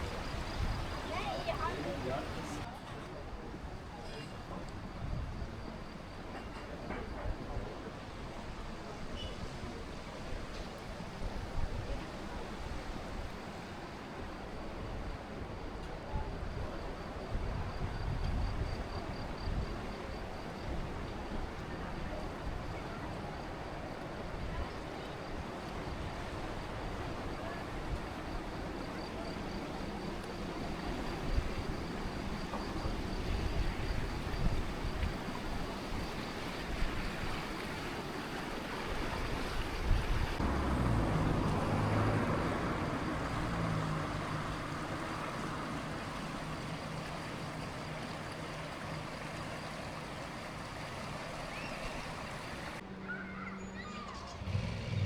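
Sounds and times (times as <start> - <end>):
river water rushing: 0.0 - 2.7, 35.1 - 52.8.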